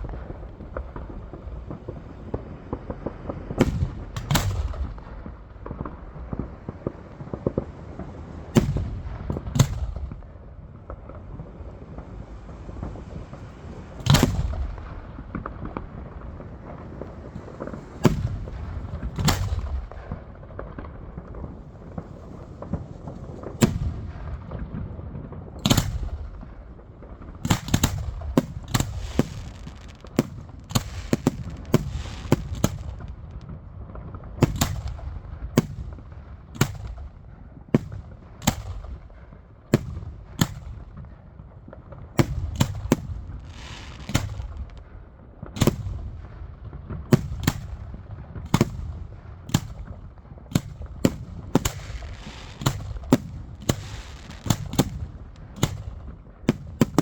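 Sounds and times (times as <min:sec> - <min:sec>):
fireworks bangs: 0:00.0 - 0:57.0
fireworks hiss: 0:12.2 - 0:19.9, 0:28.4 - 0:33.2, 0:42.7 - 0:44.8, 0:51.6 - 0:55.1.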